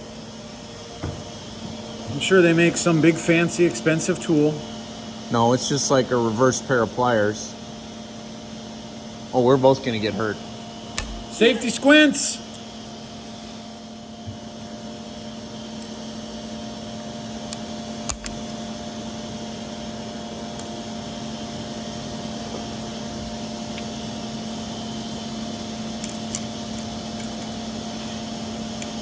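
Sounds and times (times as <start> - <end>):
steady mechanical hum: 0.0 - 29.0.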